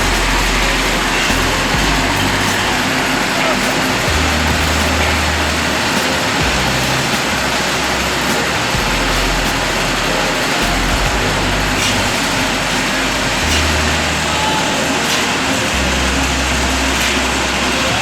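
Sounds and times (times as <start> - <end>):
constant hiss: 0.0 - 18.0
engine running: 0.0 - 18.0
low hum shifting pitch: 0.0 - 18.0.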